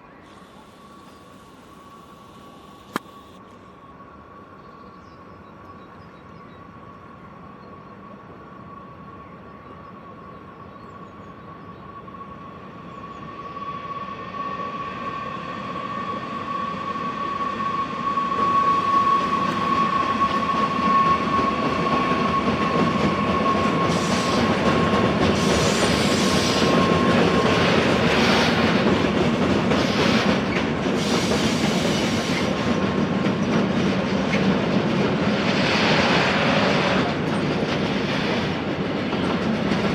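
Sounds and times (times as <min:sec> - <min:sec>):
train running: 0:00.0 - 0:04.6, 0:05.2 - 0:39.9
high wheel squeal: 0:13.4 - 0:28.7.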